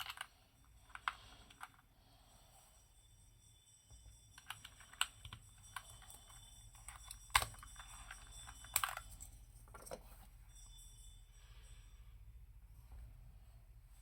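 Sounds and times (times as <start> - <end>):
mechanical keyboard typing: 4.4 - 9.2.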